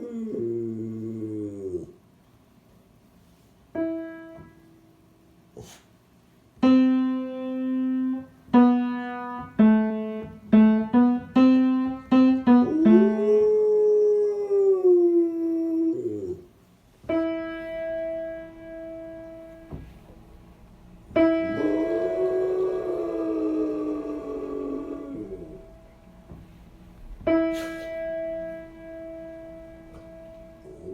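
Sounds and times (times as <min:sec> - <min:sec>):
dog howling: 0:00.0 - 0:02.0, 0:12.5 - 0:16.5, 0:21.4 - 0:25.8
piano single notes: 0:17.1 - 0:20.1, 0:27.2 - 0:30.7.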